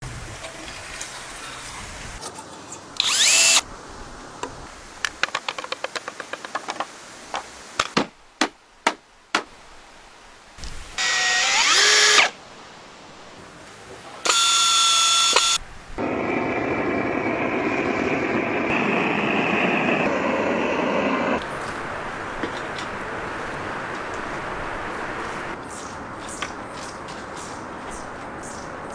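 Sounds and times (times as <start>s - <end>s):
electric drill whining: 3.0s - 3.6s, 11.0s - 12.3s, 14.3s - 16.2s
noisy power tool work: 3.0s - 3.6s, 11.0s - 12.4s, 14.2s - 21.4s.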